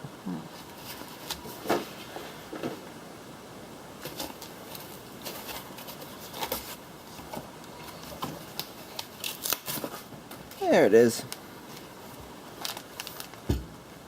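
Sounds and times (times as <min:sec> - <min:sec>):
packaging rustling: 0:04.0 - 0:10.7, 0:11.3 - 0:13.6.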